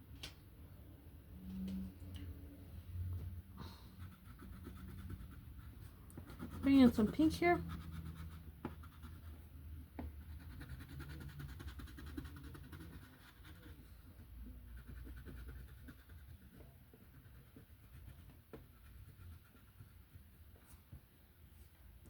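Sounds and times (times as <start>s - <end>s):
low steady hum: 0.0s - 22.0s
colouring tool scratching paper: 4.0s - 20.4s.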